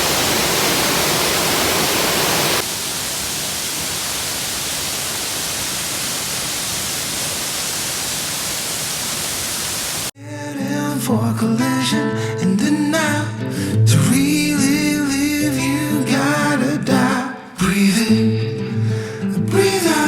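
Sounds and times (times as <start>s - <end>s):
waterfall crashing into pool: 0.0s - 10.1s.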